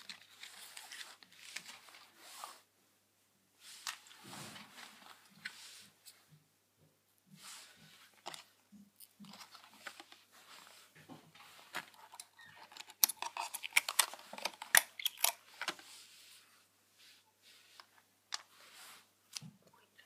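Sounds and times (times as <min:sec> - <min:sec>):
packaging clicks taps and rustles: 0:11.7 - 0:15.8.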